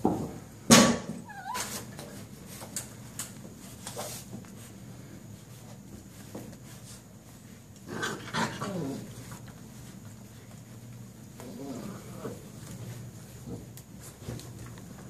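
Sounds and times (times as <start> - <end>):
puppy whining: 1.2 - 2.1, 8.1 - 9.4, 11.4 - 12.5
puppies playing: 1.2 - 15.0.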